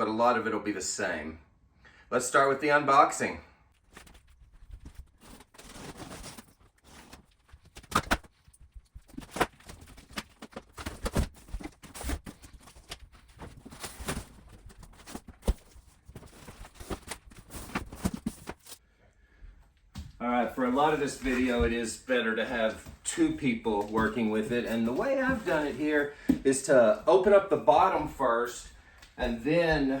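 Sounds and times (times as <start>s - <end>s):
cardboard box scraping and rustling: 5.0s - 7.4s.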